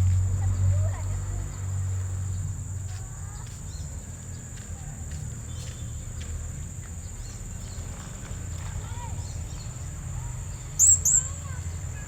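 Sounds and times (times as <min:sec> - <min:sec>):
parrot chirping: 0:10.8 - 0:11.3.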